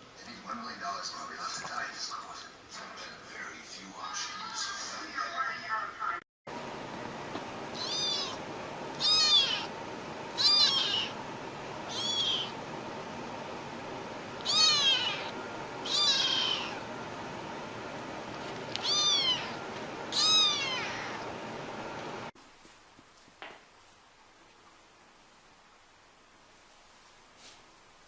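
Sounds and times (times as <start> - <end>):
cat meowing: 7.8 - 8.4, 9.0 - 9.7, 10.4 - 11.2, 11.9 - 12.6, 14.4 - 16.8, 18.8 - 21.2.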